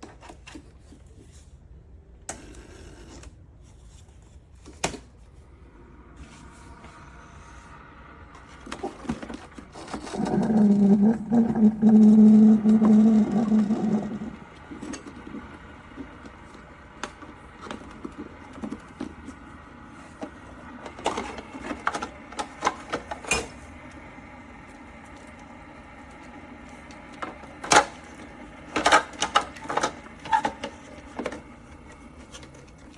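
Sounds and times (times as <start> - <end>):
small electric motor humming: 9.8 - 16.2.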